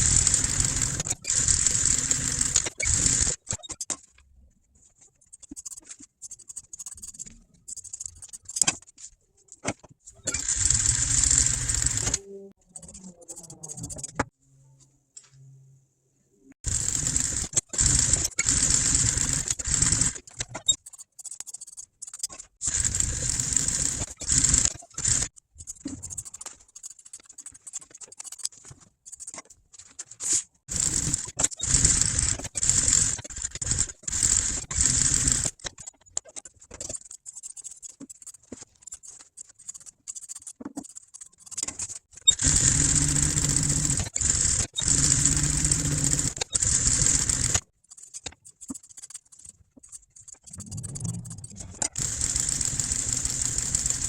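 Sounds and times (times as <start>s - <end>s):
sewing machine stitching: 0.0s - 3.8s, 10.2s - 12.2s, 16.6s - 20.8s, 22.6s - 25.4s, 30.7s - 35.7s, 42.2s - 47.6s, 50.3s - 54.0s.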